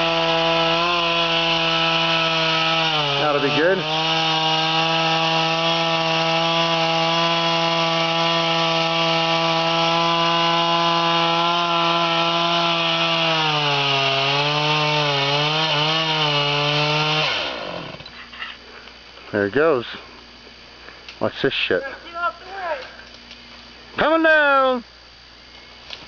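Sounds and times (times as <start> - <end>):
chainsaw cutting wood: 0.0 - 18.2.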